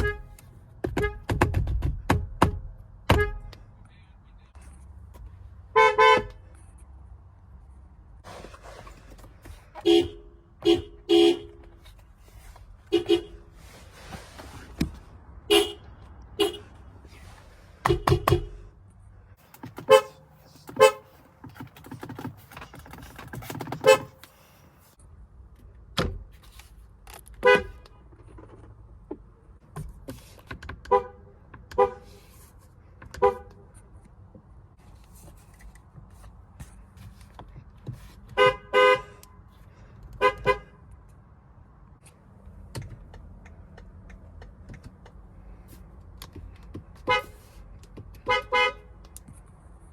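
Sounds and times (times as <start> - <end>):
car horn honks: 0.0 - 1.3, 3.1 - 3.6, 5.7 - 6.4, 9.8 - 11.9, 12.9 - 13.5, 15.5 - 16.8, 19.7 - 21.2, 23.7 - 24.2, 27.4 - 28.0, 30.9 - 32.1, 38.3 - 39.4, 40.2 - 40.8, 47.0 - 47.4, 48.2 - 49.0.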